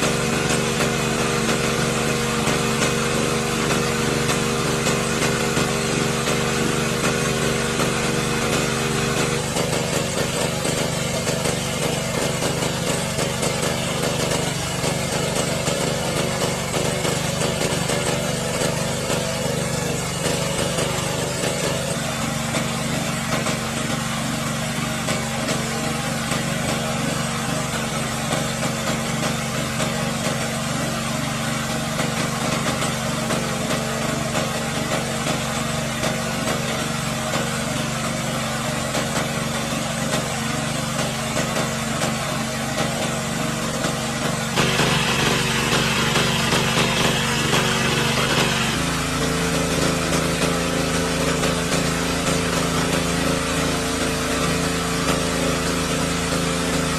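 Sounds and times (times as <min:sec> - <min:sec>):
small engine humming: 0:00.0 - 0:56.9.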